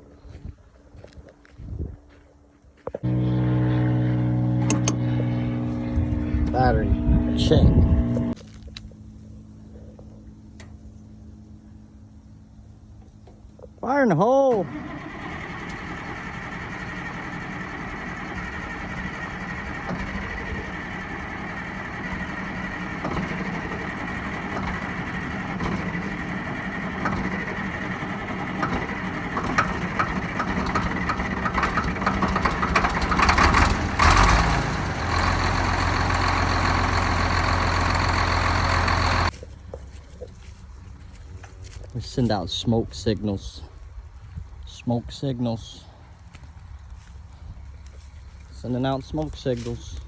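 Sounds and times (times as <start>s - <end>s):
bulldozer engine running: 3.0s - 42.4s.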